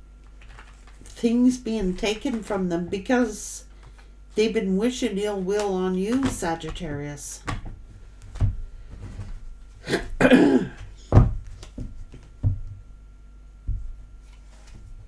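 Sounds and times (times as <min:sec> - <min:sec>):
person coughing: 0:09.8 - 0:10.9.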